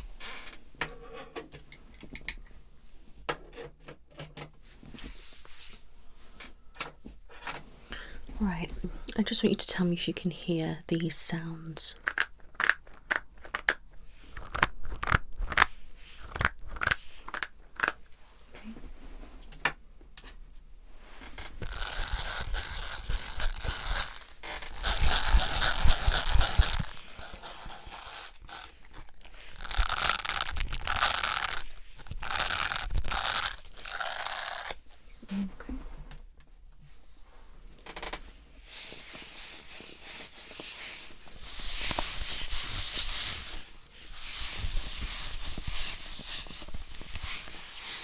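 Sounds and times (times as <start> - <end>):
dry crinkling rustle: 21.5 - 34.8.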